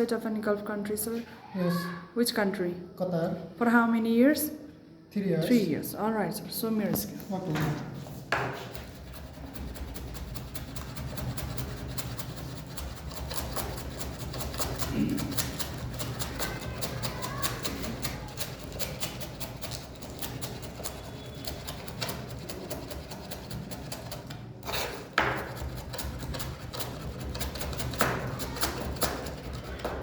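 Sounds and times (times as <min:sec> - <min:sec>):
knife chopping on cutting board: 0:08.3 - 0:15.8, 0:24.7 - 0:30.0.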